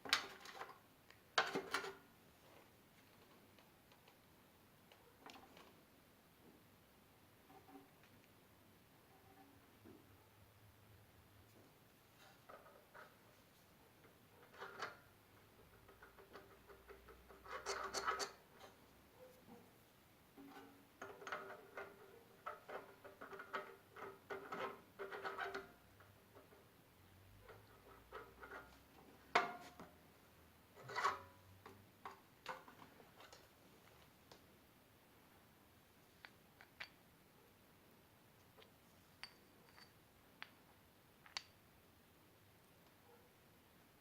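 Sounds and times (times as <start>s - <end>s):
small hard objects clicking: 41.2s - 41.6s.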